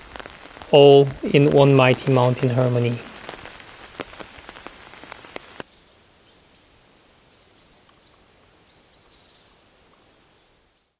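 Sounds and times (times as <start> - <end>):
rain dripping: 0.0 - 5.7
faint outdoor ambience: 0.0 - 10.9.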